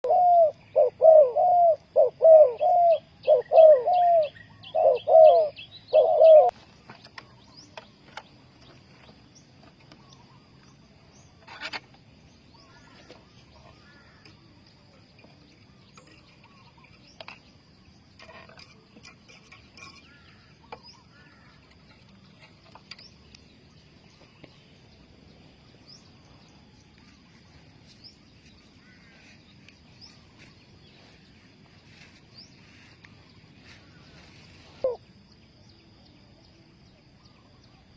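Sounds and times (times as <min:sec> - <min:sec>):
dove cooing: 0:00.0 - 0:06.6, 0:33.6 - 0:35.2
small birds chirping: 0:00.0 - 0:37.9.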